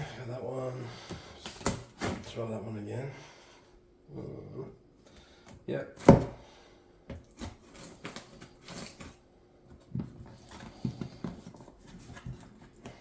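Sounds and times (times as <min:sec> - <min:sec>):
cardboard scraping and rustling: 0:09.8 - 0:13.0.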